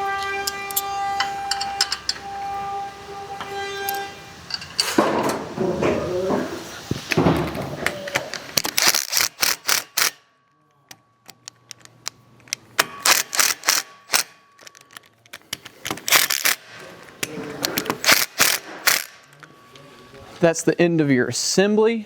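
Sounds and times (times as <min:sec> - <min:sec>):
impact driver hammering: 0:12.8 - 0:14.3, 0:17.9 - 0:19.2.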